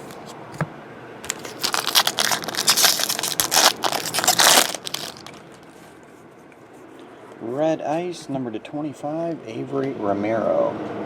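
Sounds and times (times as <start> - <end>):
wrapper crinkling: 1.2 - 5.9.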